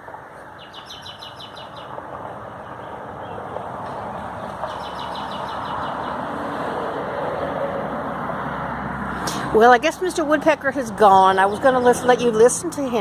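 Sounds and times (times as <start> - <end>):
vehicle engine and tyre noise: 0.0 - 13.0
bird chirping: 0.5 - 2.0, 4.4 - 6.2.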